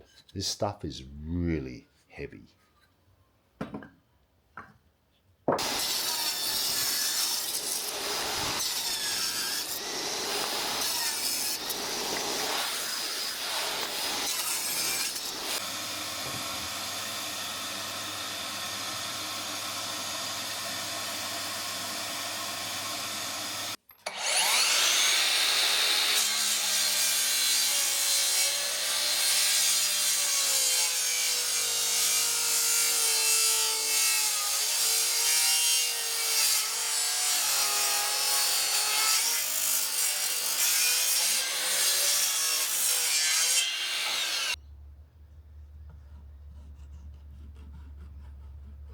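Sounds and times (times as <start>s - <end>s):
power tool cutting wood: 5.6s - 44.6s.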